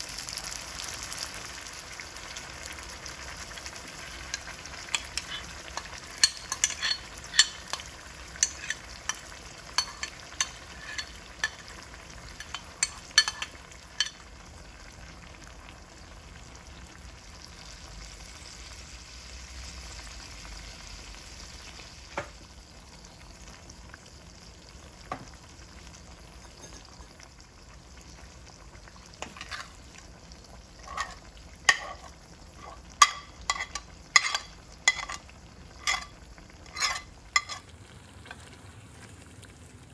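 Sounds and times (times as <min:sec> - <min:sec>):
food sizzling in a pan: 0:00.0 - 0:39.9
spoon stirring and clicking on pan: 0:03.4 - 0:14.3, 0:26.4 - 0:27.2, 0:29.1 - 0:30.1, 0:30.8 - 0:37.7.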